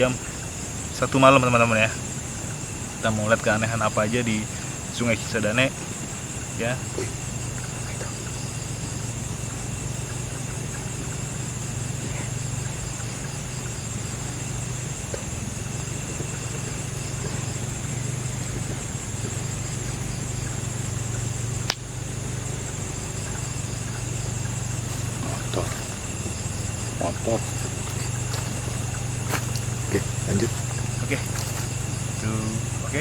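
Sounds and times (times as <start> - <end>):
motor idling hum: 0.0 - 33.0
sharp click: 21.7 - 21.9.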